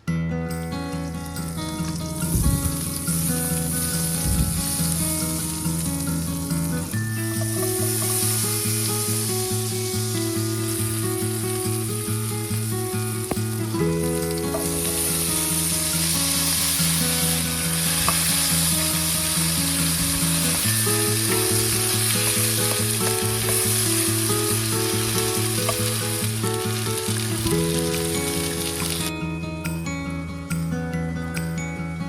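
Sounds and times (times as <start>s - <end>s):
background music of held chords: 0.0s - 32.0s
food sizzling in a pan: 1.4s - 29.1s.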